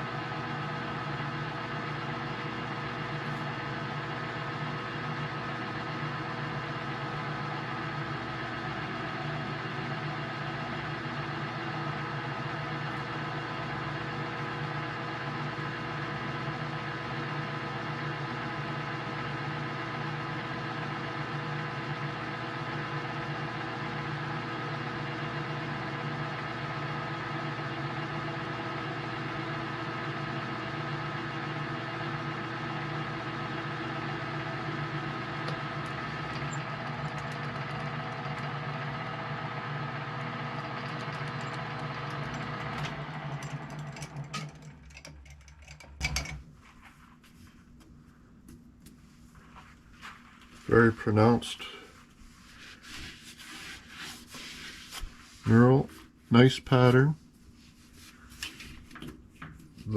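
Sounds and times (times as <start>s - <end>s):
metal lathe running: 22.5s - 46.3s.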